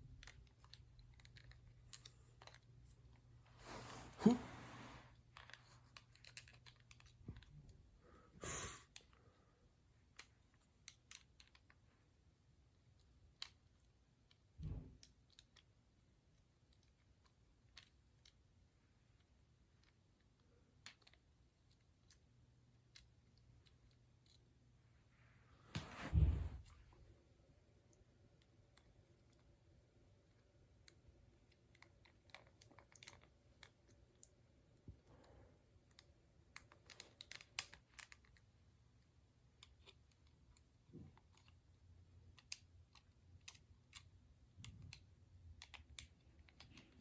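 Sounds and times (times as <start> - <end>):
plastic toy parts clicking: 0.0 - 2.8, 5.4 - 7.7, 10.0 - 11.8, 12.8 - 15.8, 19.7 - 24.5, 30.8 - 34.3, 35.9 - 38.5, 39.5 - 47.0.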